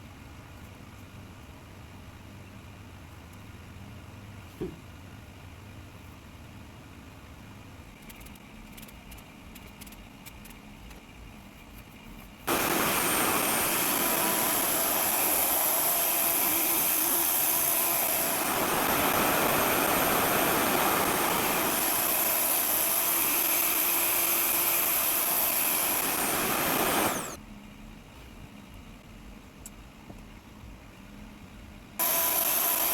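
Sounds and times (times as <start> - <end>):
hair dryer running: 12.5 - 27.4, 32.0 - 32.9.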